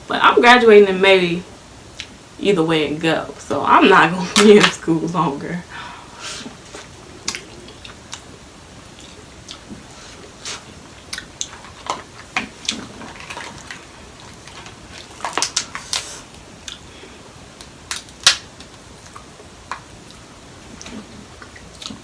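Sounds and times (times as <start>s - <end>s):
seafood shells cracking: 11.2s - 16.8s, 17.6s - 19.9s.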